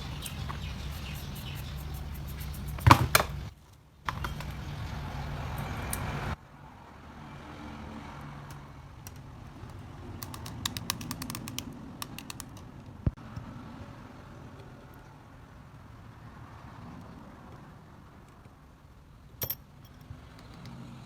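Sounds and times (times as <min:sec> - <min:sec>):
plastic and metal clicks: 0:10.2 - 0:12.7.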